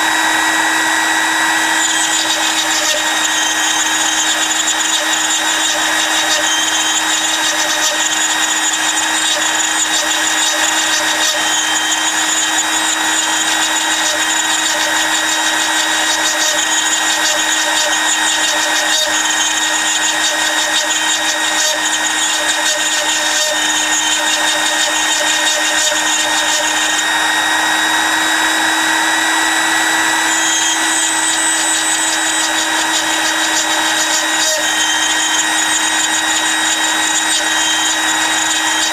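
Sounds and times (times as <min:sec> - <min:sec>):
rotary tool grinding glass: 0:00.0 - 0:38.9.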